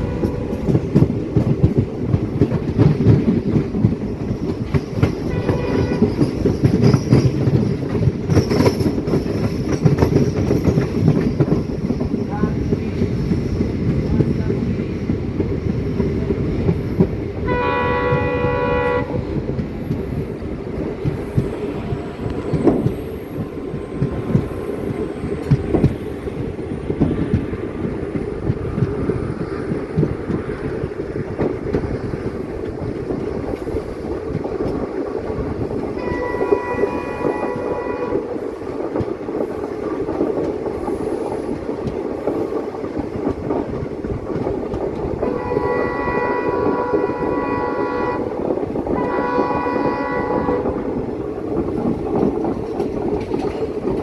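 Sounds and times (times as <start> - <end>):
multi-tone train horn: 0.0 - 1.0, 5.2 - 6.6, 17.4 - 19.4, 36.0 - 38.4, 45.2 - 51.2
train wheels rumbling on rails: 0.0 - 54.0.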